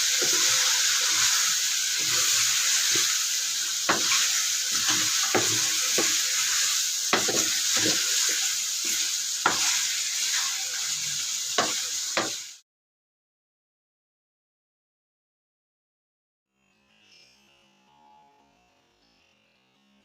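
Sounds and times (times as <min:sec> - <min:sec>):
spoon scraping a pan: 0:00.0 - 0:12.4
food sizzling in a pan: 0:00.0 - 0:12.6.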